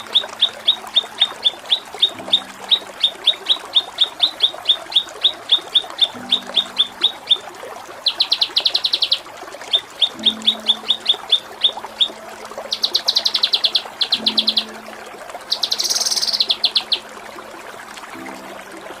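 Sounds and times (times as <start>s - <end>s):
songbird rattling trills: 0.0s - 7.4s, 8.0s - 14.8s, 15.5s - 17.0s
songbird sharp pik notes: 0.0s - 7.4s, 10.0s - 14.8s, 15.5s - 17.0s.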